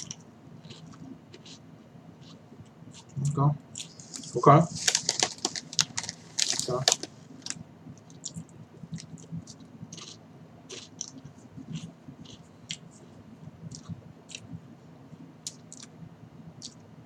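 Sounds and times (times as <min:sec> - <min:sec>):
potato chip crunching: 0:03.8 - 0:08.3.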